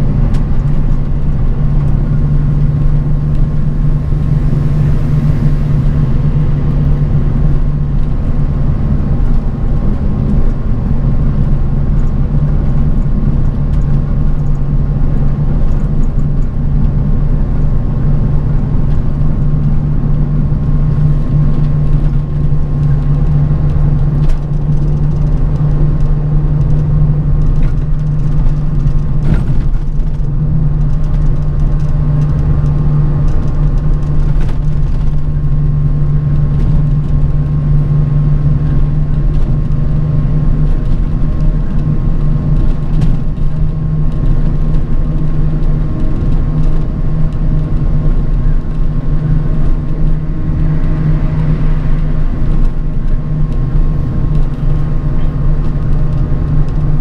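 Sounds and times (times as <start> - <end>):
bus engine and road drone: 0.0 - 57.0
faint steady whine: 1.8 - 8.4.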